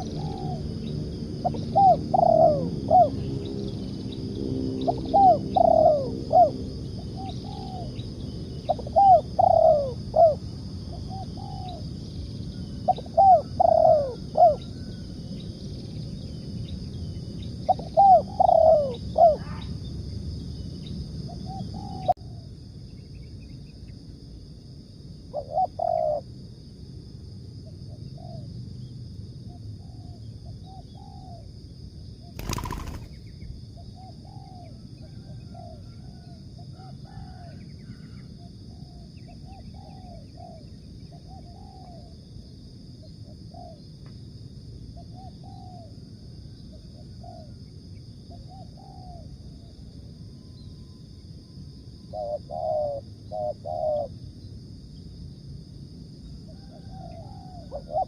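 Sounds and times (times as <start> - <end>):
doves cooing: 0.0 - 0.7, 1.4 - 3.3, 4.8 - 8.0, 8.7 - 10.4, 12.8 - 15.0, 17.7 - 19.7, 25.4 - 26.2, 32.4 - 33.2, 52.1 - 54.1, 56.7 - 58.0.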